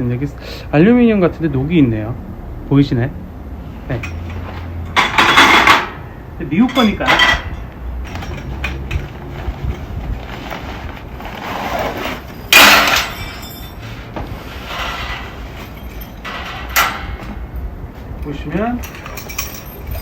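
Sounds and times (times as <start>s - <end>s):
loud metallic clank: 3.9s - 9.1s, 12.5s - 17.7s
metal parts scraping and knocking: 3.9s - 17.6s, 18.8s - 20.0s.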